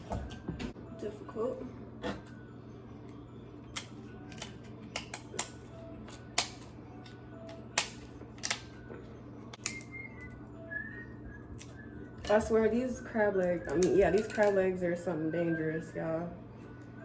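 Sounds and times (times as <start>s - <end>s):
crab shells cracking: 3.7s - 6.7s, 7.5s - 8.8s, 9.6s - 10.0s.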